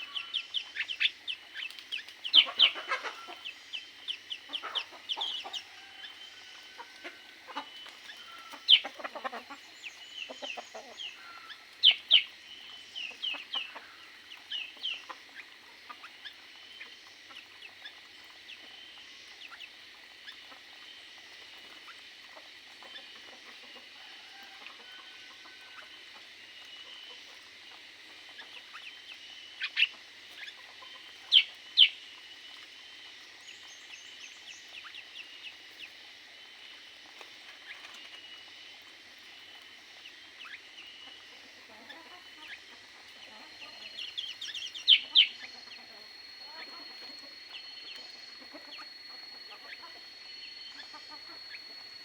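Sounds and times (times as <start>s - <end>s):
birds chattering and calling: 0.0s - 52.0s.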